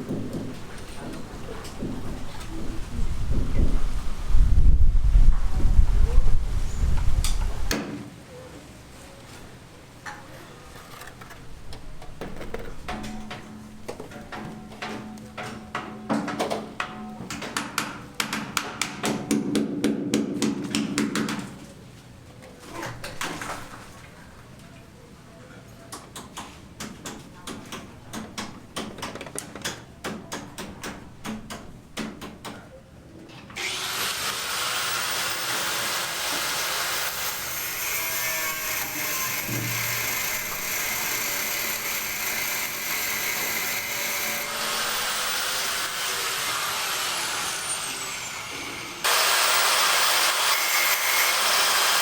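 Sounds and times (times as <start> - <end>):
power tool running: 33.6 - 52.0.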